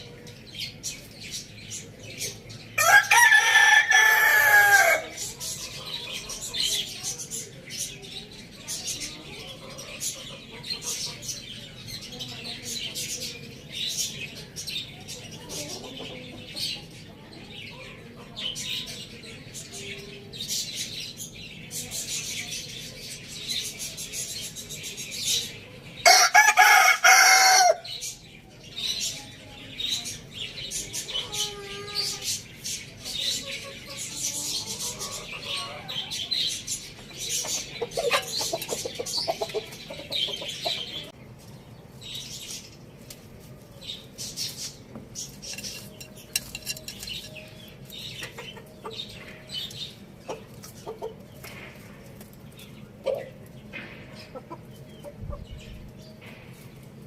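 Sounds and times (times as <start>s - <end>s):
small birds chirping: 0.0s - 57.0s
rooster crowing: 2.8s - 5.1s, 26.0s - 27.8s
hens clucking: 15.3s - 18.4s, 30.7s - 32.4s, 33.1s - 41.2s, 47.3s - 56.0s.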